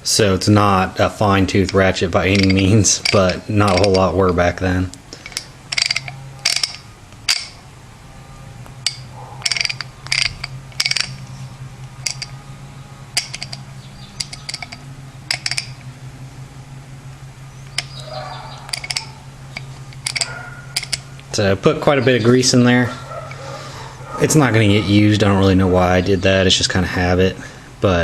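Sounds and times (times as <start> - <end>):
steady low hum: 0.0 - 28.0
ratchet clicking: 1.6 - 4.1, 5.1 - 7.6, 8.8 - 11.3, 11.9 - 12.4, 13.2 - 15.9, 17.6 - 21.3.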